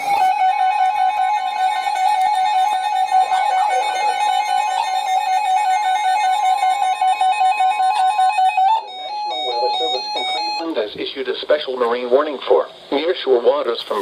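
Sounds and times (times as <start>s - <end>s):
warbling electronic alarm: 0.0s - 10.9s.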